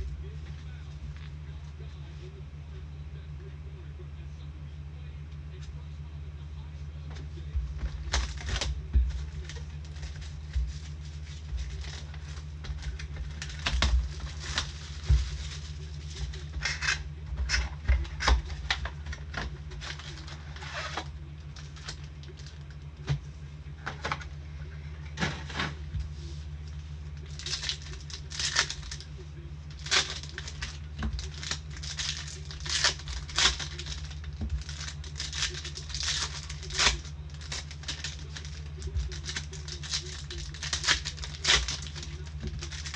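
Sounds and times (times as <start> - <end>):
steady low hum: 0.0 - 42.9
card packs tearing and crinkling: 7.9 - 22.7, 27.3 - 29.1, 29.7 - 42.9.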